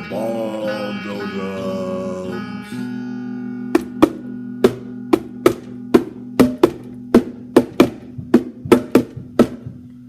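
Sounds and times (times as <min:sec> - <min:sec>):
low ringing chord: 0:00.0 - 0:10.0
bongo drums struck by hand: 0:03.8 - 0:10.0.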